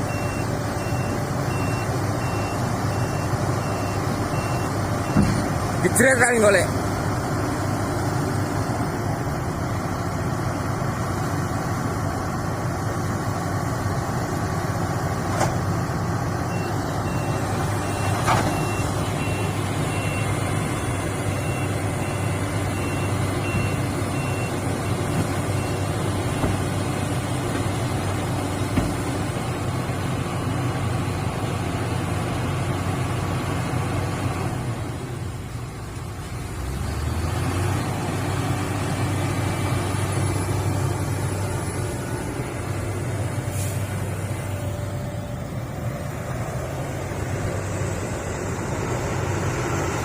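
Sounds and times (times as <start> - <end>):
heavy diesel machinery running: 0.0 - 50.0
back-up alarm beeping: 0.1 - 5.4, 16.5 - 26.0.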